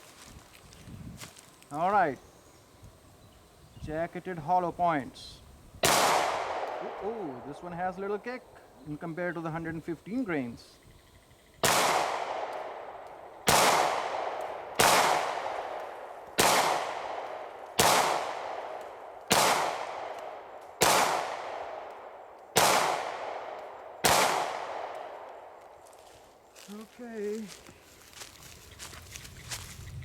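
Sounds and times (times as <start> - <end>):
pistol shots with echo: 5.8 - 7.6, 11.6 - 25.5.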